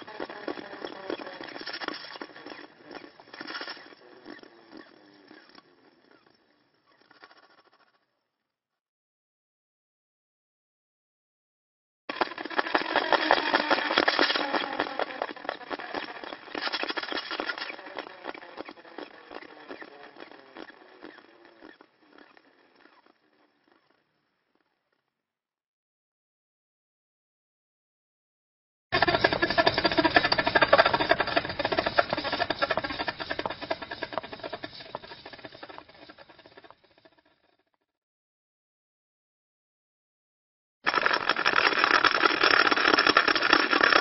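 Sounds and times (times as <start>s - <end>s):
spinning wheel clicking rattle: 0.0s - 8.0s, 12.1s - 24.0s, 29.0s - 37.4s, 40.9s - 44.0s.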